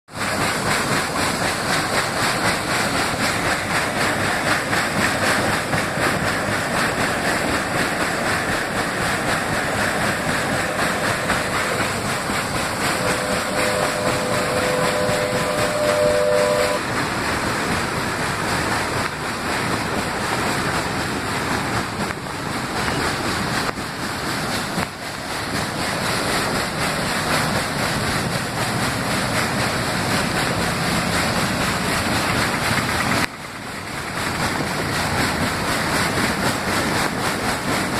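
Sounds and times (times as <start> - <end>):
water rushing through dam gates: 0.1 - 37.9
held two-pitch tone: 13.0 - 16.8.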